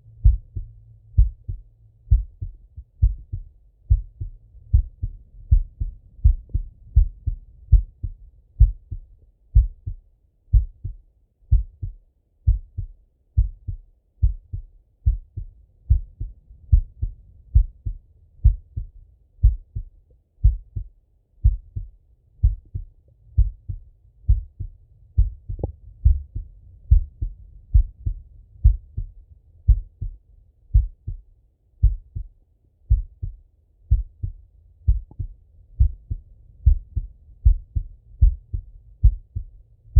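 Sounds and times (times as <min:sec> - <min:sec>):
heartbeat through stethoscope: 0:00.1 - 0:39.9.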